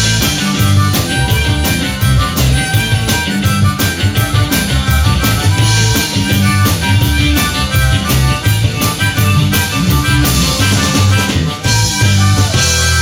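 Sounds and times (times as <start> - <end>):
bass guitar: 0.0 - 13.0
electric guitar: 0.0 - 13.0
steady drum kit beat: 0.0 - 13.0.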